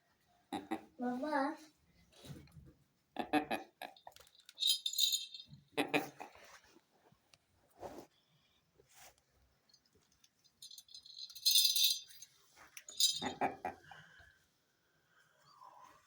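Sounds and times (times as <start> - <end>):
metallic jingling rattle: 4.3 - 5.6, 10.4 - 13.4.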